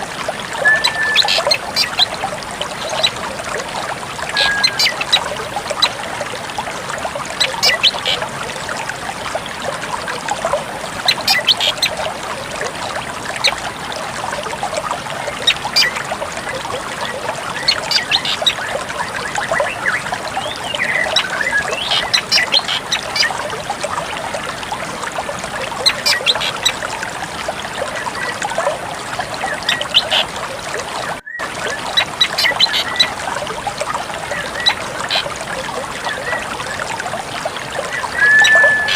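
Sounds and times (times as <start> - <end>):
water trickling: 0.0 - 38.9
drongo chirping and whistling: 0.6 - 2.0, 4.4 - 5.2, 38.1 - 38.9.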